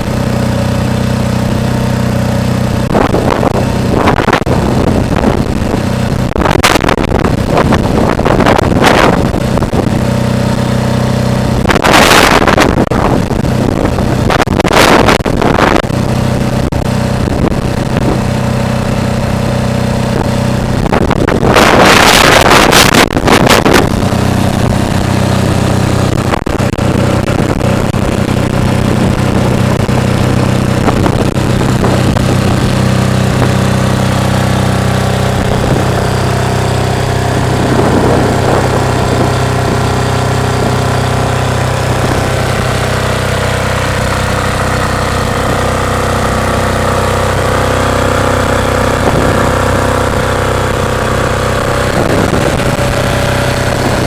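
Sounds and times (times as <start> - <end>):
diesel generator humming: 0.0 - 54.0
wind buffeting microphone: 0.0 - 54.0.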